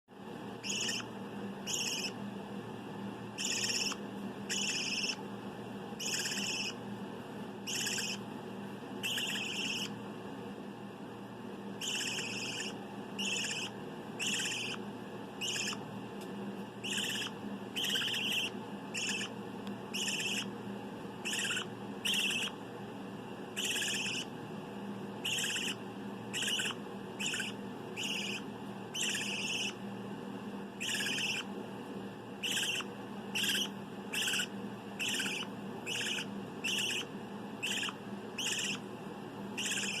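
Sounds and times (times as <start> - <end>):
canary raspy chirps: 0.5 - 2.3, 3.3 - 5.3, 6.0 - 6.8, 7.6 - 8.3, 9.0 - 10.0, 11.7 - 15.9, 16.8 - 20.6, 21.2 - 22.6, 23.5 - 24.4, 25.2 - 29.9, 30.8 - 31.6, 32.4 - 38.9, 39.5 - 40.0.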